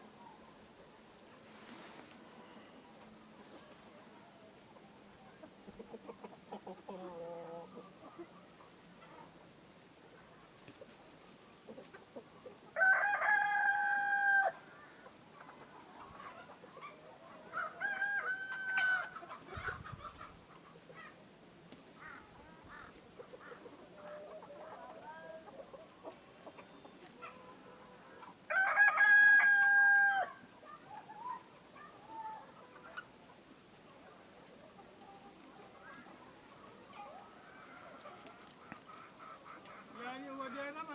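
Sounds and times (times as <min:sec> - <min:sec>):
chickens clucking: 0:00.0 - 0:40.9
rooster crowing: 0:12.8 - 0:14.8, 0:17.5 - 0:19.2, 0:28.5 - 0:30.5.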